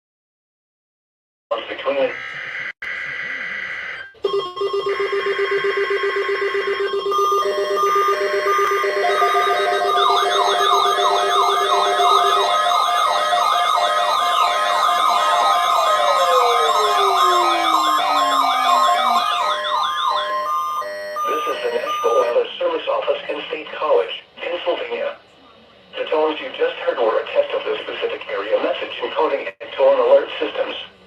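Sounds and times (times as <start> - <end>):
siren winding down: 2.1 - 22.4
falling siren sweeps: 2.3 - 22.3
steady electronic tones: 6.0 - 22.3
fast warbling tone: 6.6 - 22.3.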